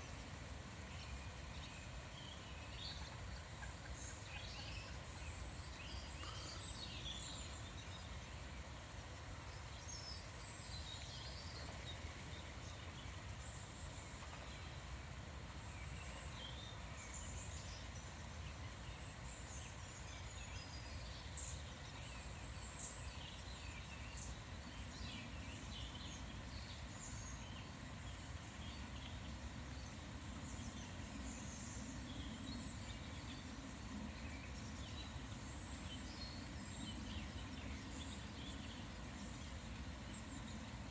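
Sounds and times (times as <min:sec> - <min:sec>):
small birds chirping: 0:00.1 - 0:15.0, 0:15.6 - 0:40.9.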